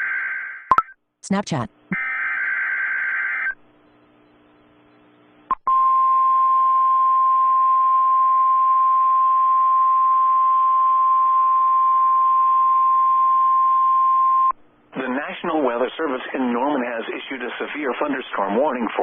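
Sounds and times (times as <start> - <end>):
weather radio alarm tone: 1.9 - 3.6.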